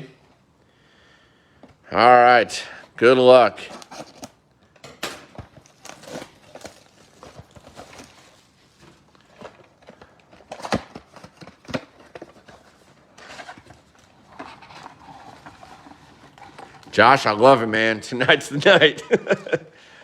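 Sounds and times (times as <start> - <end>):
foil pack tearing and crinkling: 5.3 - 17.0.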